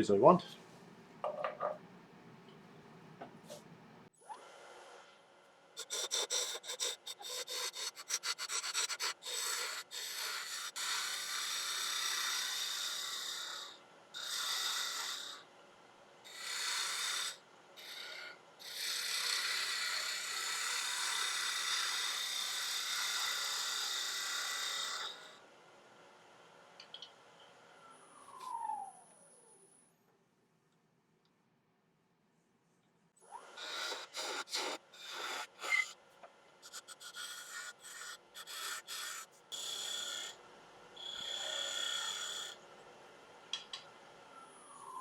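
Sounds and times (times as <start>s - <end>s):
hiss of wood shavings: 5.8s - 15.4s, 33.6s - 35.9s, 36.6s - 40.4s
lathe tool cutting wood: 5.8s - 15.4s, 16.3s - 25.3s, 33.5s - 35.9s, 36.6s - 40.4s, 41.0s - 42.6s.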